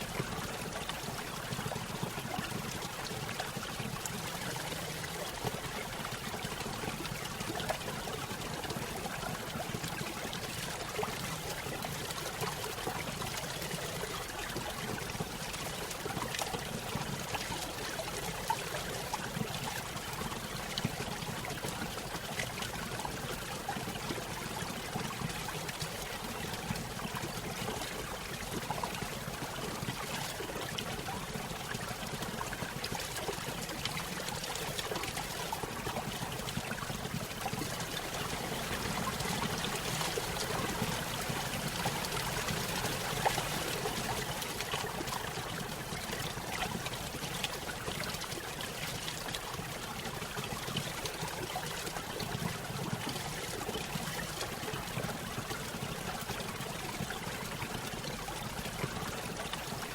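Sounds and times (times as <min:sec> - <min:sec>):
stream splashing over waterfall: 0:34.0 - 0:50.4.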